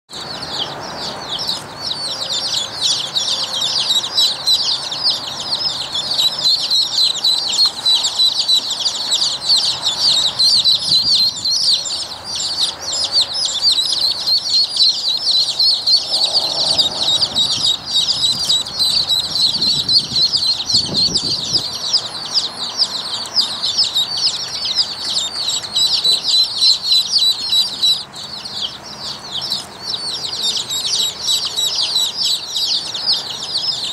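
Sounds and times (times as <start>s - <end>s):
ducklings peeping: 0.1s - 33.9s.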